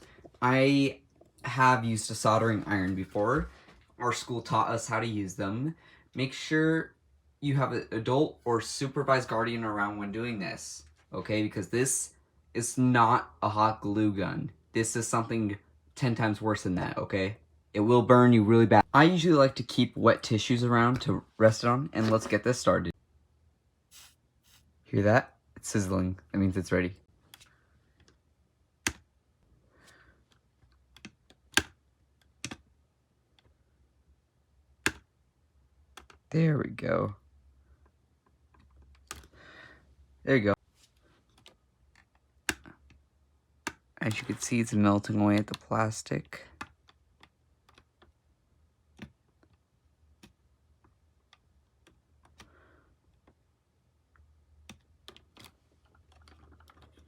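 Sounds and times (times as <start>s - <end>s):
hard plastic clicks and taps: 28.8s - 29.0s, 34.8s - 35.1s, 41.4s - 43.0s.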